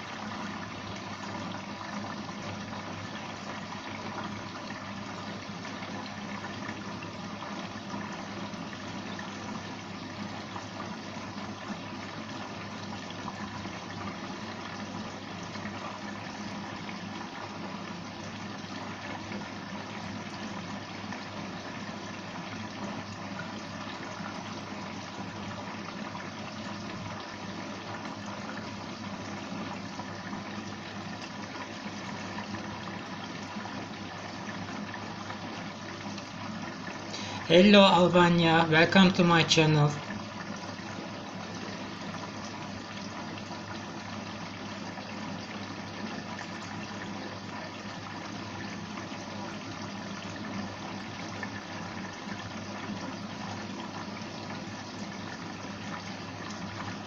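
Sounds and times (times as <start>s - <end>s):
running water rushing: 0.0s - 57.0s
faint even hum: 36.9s - 43.5s.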